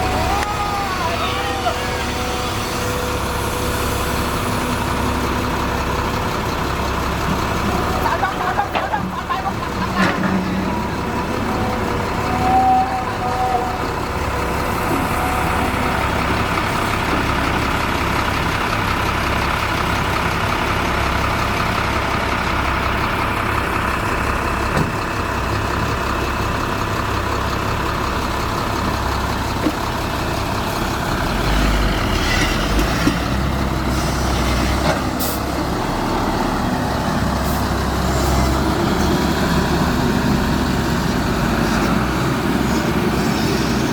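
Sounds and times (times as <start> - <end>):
diesel engines running: 0.0 - 43.9.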